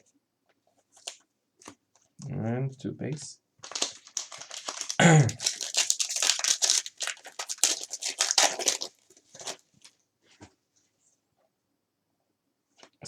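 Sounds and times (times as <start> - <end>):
plastic wrapper crinkling and tearing: 3.6 - 10.0.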